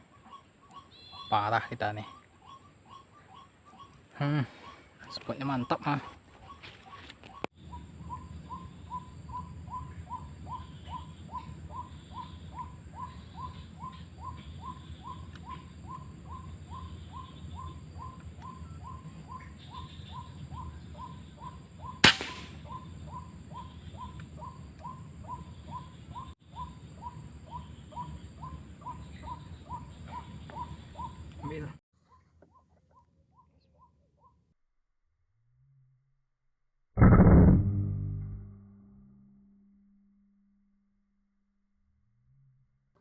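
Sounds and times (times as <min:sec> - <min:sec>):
gunshot: 0:22.0 - 0:22.6, 0:37.0 - 0:38.4.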